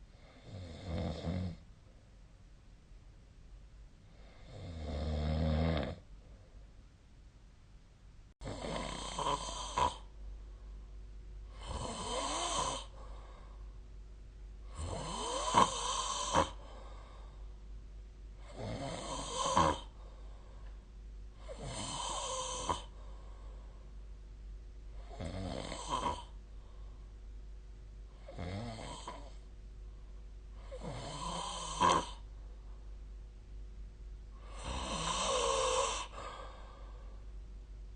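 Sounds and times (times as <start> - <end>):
person snoring: 0.2 - 1.6, 4.1 - 6.0, 8.4 - 10.1, 11.5 - 13.2, 14.7 - 17.2, 18.4 - 20.0, 21.4 - 23.0, 25.0 - 26.4, 28.2 - 29.4, 30.6 - 32.3, 34.4 - 37.1.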